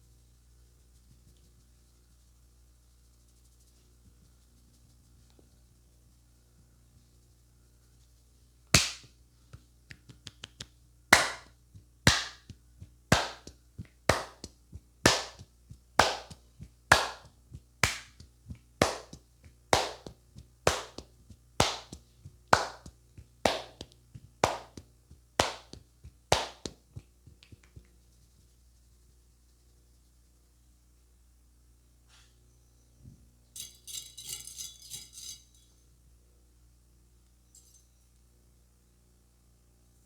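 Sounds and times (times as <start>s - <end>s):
hands slapping during head massage: 8.8s - 28.0s.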